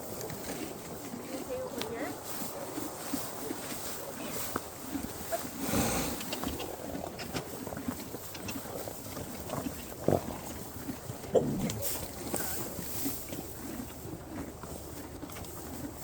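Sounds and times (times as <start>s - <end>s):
farm animals making short noises: 4.1s - 10.5s, 11.1s - 14.5s.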